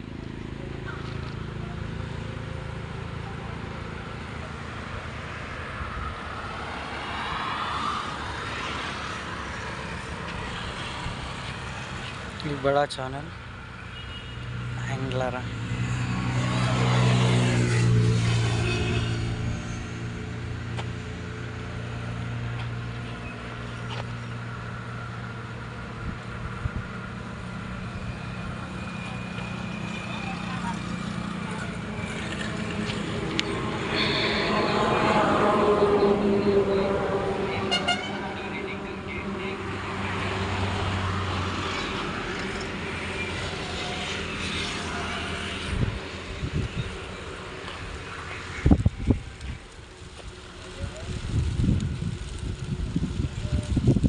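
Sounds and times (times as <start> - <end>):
diesel engine humming: 18.8 - 54.0.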